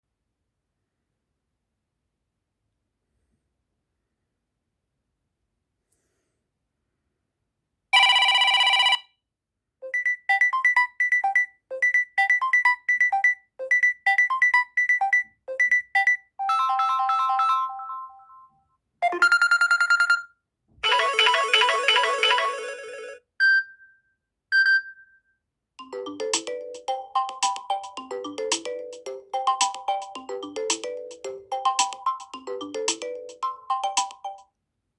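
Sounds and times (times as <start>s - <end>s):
electronic ringtone melodies: 8.0s - 9.0s, 9.8s - 23.2s, 25.8s - 34.4s.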